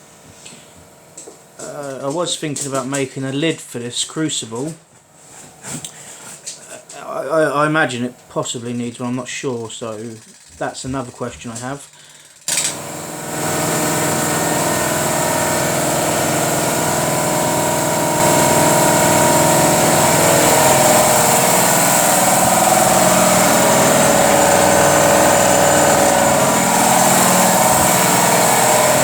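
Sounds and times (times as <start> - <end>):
motor hum: 12.5 - 29.0
oil burner jet roar: 12.5 - 29.0.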